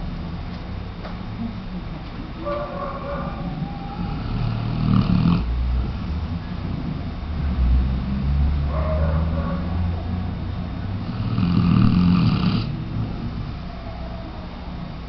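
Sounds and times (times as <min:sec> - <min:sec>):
dog snoring: 0:03.7 - 0:05.5, 0:11.0 - 0:13.5.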